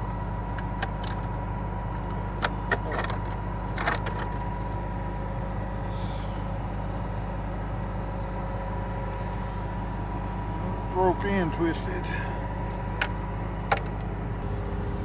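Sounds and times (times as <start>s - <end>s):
combine engine idling: 0.0s - 15.0s.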